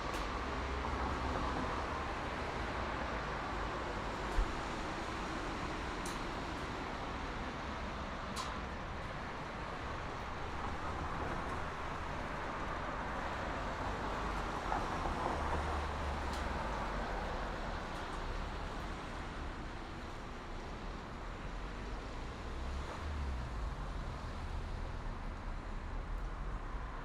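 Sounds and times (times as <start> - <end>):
distant highway traffic: 0.0 - 21.2.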